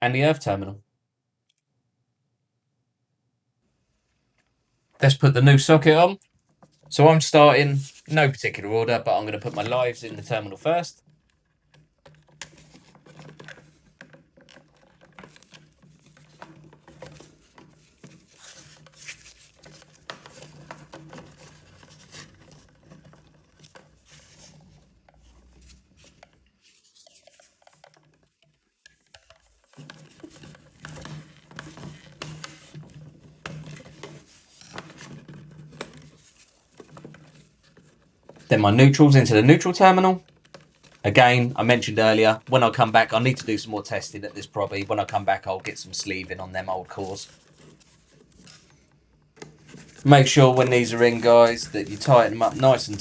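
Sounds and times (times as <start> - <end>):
wires scratching in socket terminal: 41.1 - 47.7, 50.0 - 53.0.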